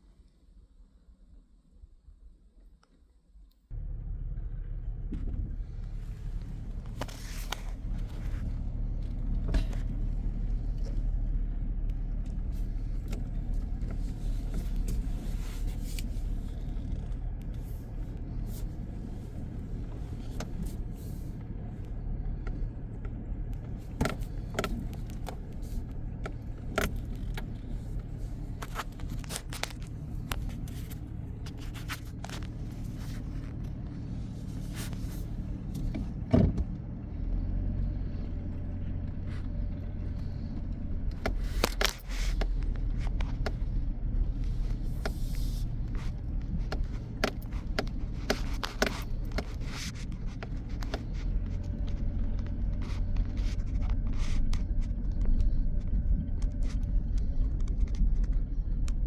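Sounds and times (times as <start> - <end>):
vehicle engine humming: 3.7 - 59.0.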